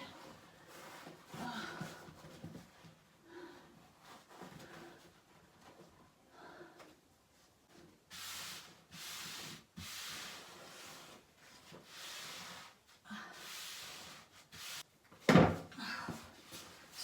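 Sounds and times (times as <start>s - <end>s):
rubbing strokes on wall covering: 7.6s - 14.9s.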